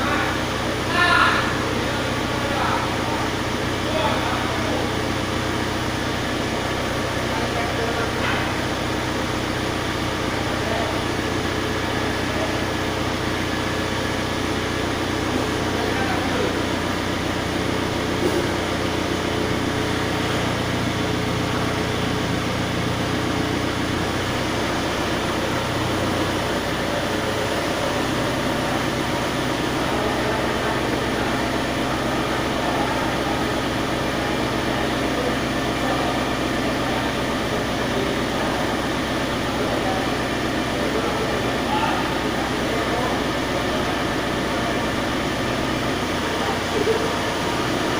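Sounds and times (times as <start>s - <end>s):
busy mechanical background: 0.0s - 47.9s
engine running with low hum: 0.0s - 47.9s.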